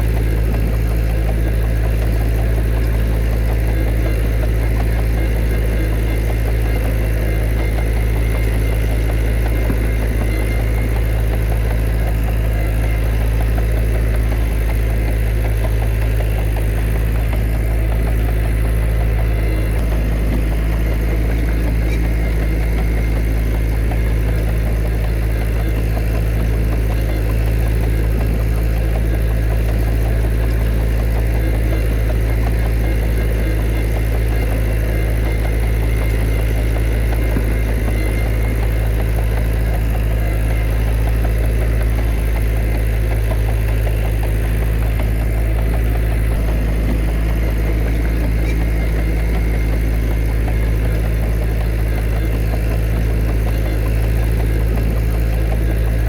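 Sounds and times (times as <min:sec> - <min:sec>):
heavy diesel engine rumbling: 0:00.0 - 0:56.0.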